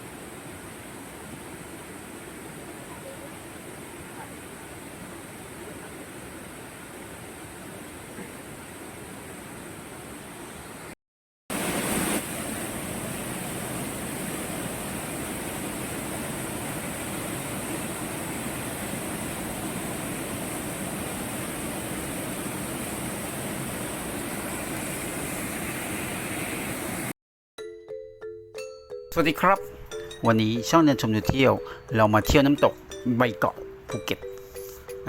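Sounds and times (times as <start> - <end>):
waterfall rushing: 11.5 - 27.1.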